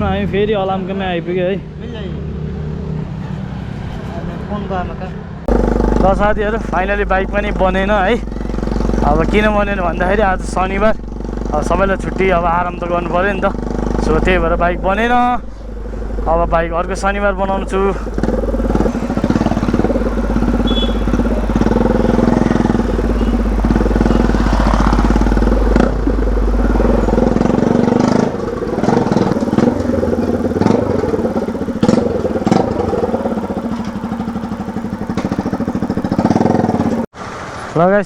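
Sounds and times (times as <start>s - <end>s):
motorcycle engine running: 5.5s - 37.1s
sharp knocks and clicks: 18.0s - 34.2s, 35.0s - 37.0s.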